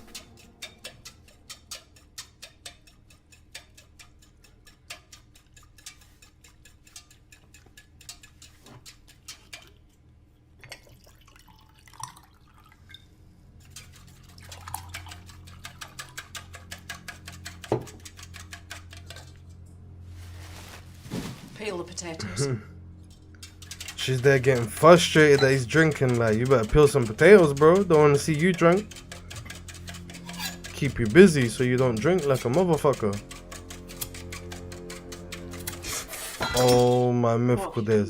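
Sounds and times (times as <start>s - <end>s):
light clicks and drips: 0.0s - 19.7s
low steady hum: 6.8s - 38.0s.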